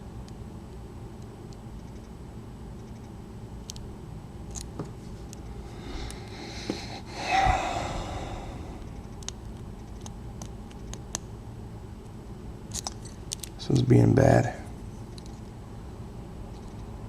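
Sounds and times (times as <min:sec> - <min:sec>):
person breathing loudly: 0:05.6 - 0:09.0.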